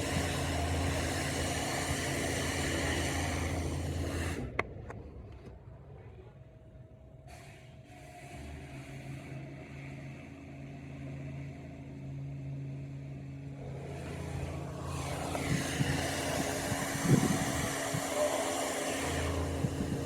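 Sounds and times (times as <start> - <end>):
vehicle engine humming: 0.0 - 20.0
rush of noise: 13.6 - 20.0.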